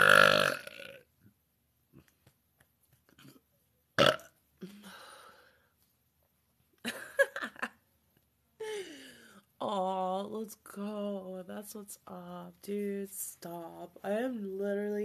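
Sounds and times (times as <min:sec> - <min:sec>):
woman burping: 0:00.0 - 0:01.0, 0:04.0 - 0:05.0.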